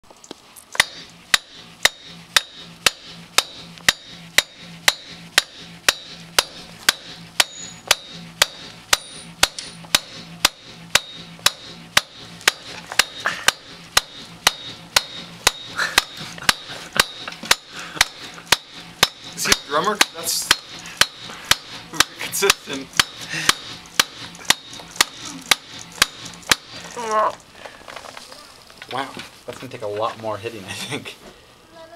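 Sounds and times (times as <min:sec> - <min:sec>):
blows struck on a connector: 0:00.8 - 0:22.1, 0:23.0 - 0:26.7.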